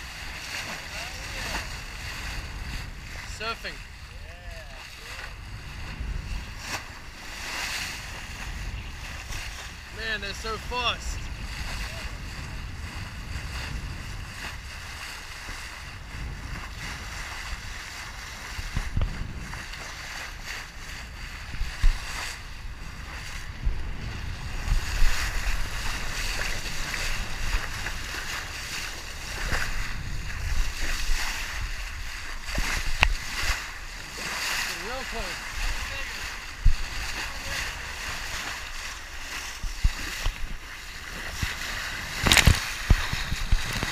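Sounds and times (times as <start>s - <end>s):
water splashing along a hull: 0.0s - 43.9s
wind buffeting microphone: 0.0s - 43.9s.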